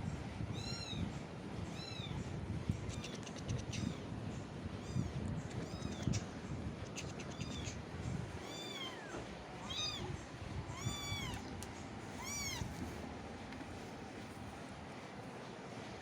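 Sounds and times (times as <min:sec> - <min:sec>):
kittens mewing: 0:08.4 - 0:11.5.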